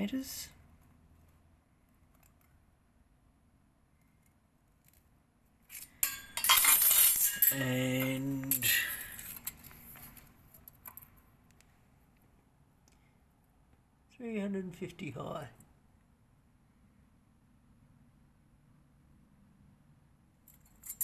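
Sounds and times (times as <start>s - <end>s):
metal hardware clattering: 5.7s - 11.0s.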